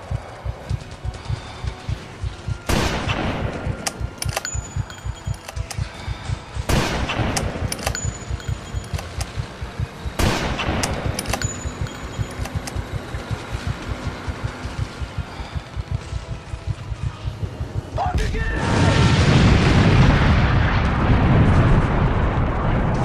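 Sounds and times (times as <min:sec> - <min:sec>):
rapid machine-gun fire: 0:00.0 - 0:03.8, 0:06.6 - 0:07.7, 0:09.0 - 0:15.8
sharp ticks: 0:00.0 - 0:18.0
loud explosion blasts: 0:18.5 - 0:23.0.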